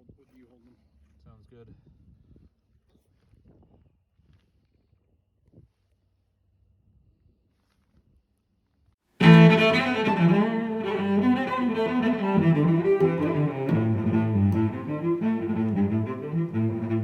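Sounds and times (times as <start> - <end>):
background music with held notes: 9.2 - 17.0.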